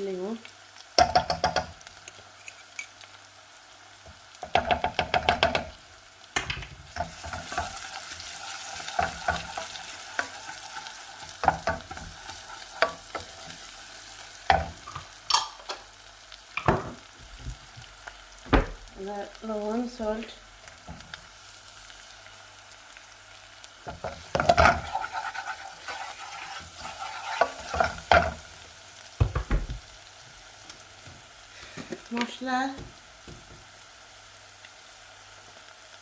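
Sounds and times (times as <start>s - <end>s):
food sizzling in hot oil: 0.0s - 36.0s
spatula scraping a pan: 7.0s - 15.4s, 23.8s - 28.5s.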